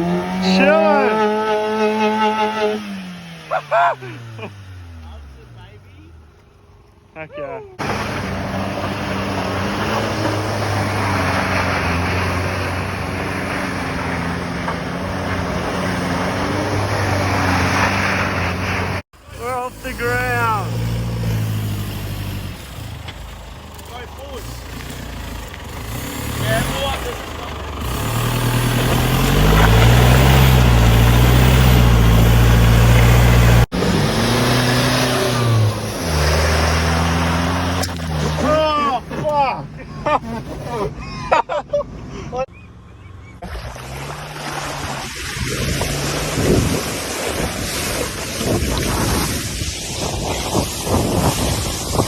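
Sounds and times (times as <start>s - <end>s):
car engine revving under load: 0.0s - 7.1s, 7.8s - 41.0s
vehicle engine running: 18.8s - 34.1s.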